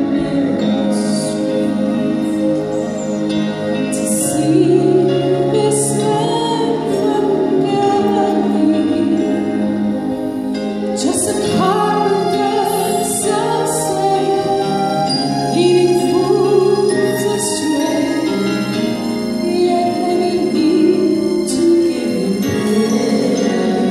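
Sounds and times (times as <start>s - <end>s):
woman singing slow melody: 0.0s - 2.1s, 3.9s - 10.1s, 10.9s - 23.9s
sustained instrumental accompaniment: 0.0s - 23.9s.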